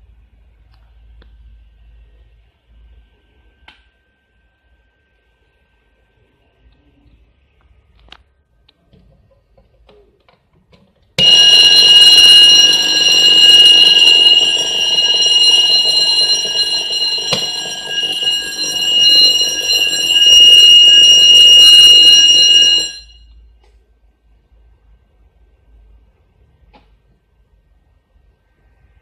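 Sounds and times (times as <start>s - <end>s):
fire alarm ringing: 11.2s - 23.3s.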